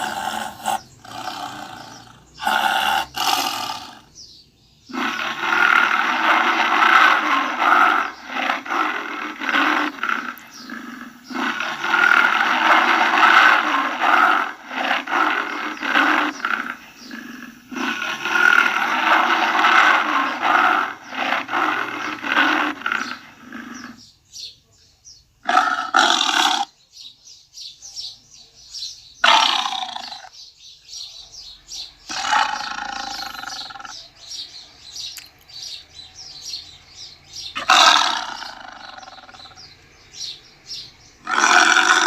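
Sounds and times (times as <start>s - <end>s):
tiger roaring and grunting: 0.0s - 4.2s, 4.9s - 24.1s, 25.4s - 26.7s, 29.2s - 30.4s, 32.1s - 34.0s, 37.4s - 39.7s, 41.2s - 42.0s.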